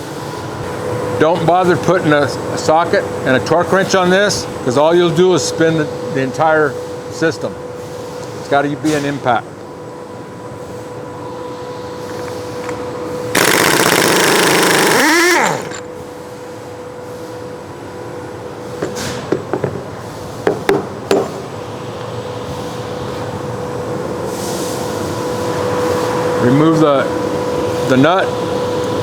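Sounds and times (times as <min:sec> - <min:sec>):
steady hum: 0:09.1 - 0:18.7
pneumatic impact wrench hammering: 0:13.3 - 0:16.0.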